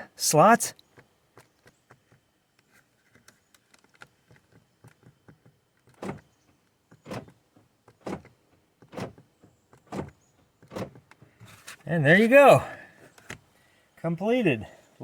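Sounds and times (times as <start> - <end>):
car door locks clunking: 8.0 - 11.2.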